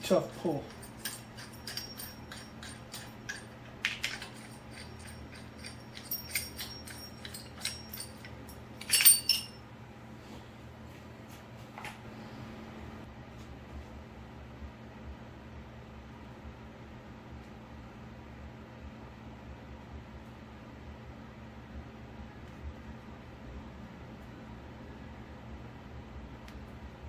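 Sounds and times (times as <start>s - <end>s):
metal tools clinking: 0.0s - 9.6s
low steady hum: 0.0s - 15.8s
ringing metal clank: 0.1s - 9.6s.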